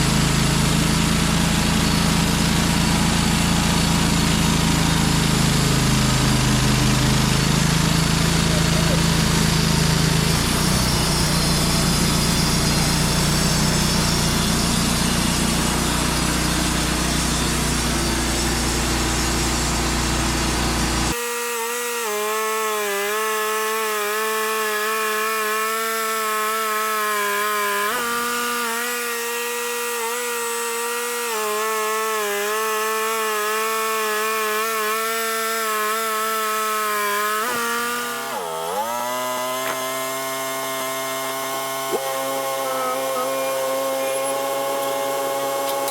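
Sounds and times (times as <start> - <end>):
steady pitched machine whine: 0.0 - 21.2
band sawmill cutting log: 0.0 - 45.9.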